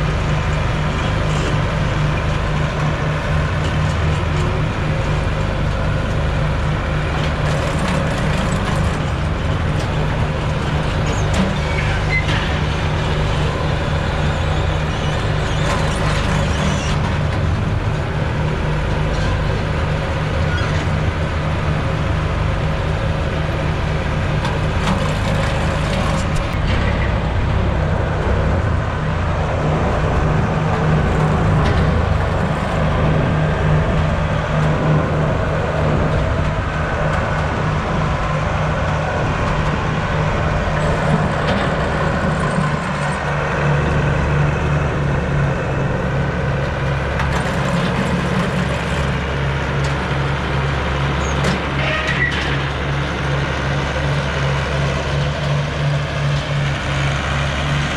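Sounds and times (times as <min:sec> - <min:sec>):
machinery engine running: 0:00.0 - 0:57.9.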